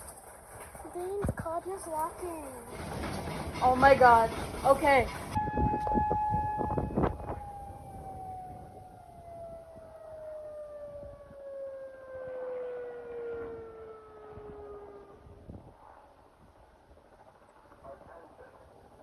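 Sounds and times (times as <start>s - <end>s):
mechanical warning siren: 2.7s - 15.9s.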